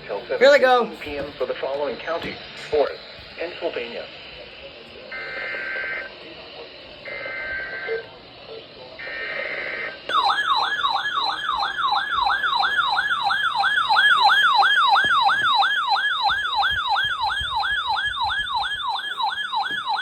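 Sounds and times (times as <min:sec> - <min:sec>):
electronic siren yelping: 0:05.1 - 0:06.1, 0:07.0 - 0:08.1, 0:09.0 - 0:20.0.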